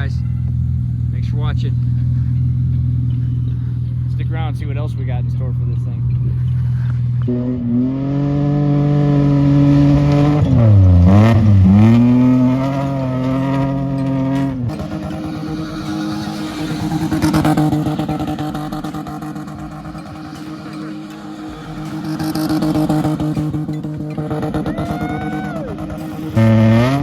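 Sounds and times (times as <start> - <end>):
car engine running under load: 0.0 - 27.0.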